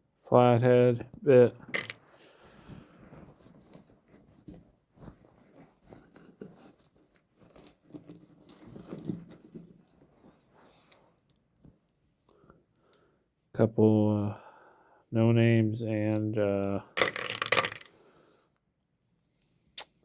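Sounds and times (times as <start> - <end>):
rustling: 2.0 - 11.2.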